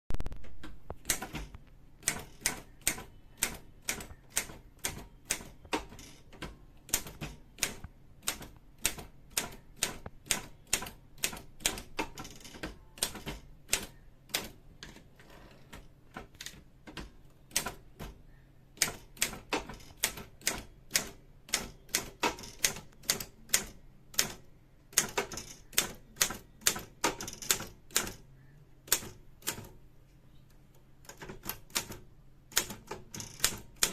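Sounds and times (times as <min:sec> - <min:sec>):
typewriter key strikes: 0:01.0 - 0:15.0, 0:18.8 - 0:24.4, 0:31.1 - 0:33.9.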